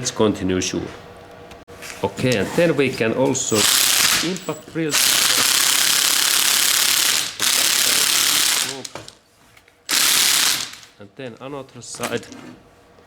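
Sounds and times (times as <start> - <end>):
impact drill hammering: 3.6 - 9.1, 9.9 - 10.9.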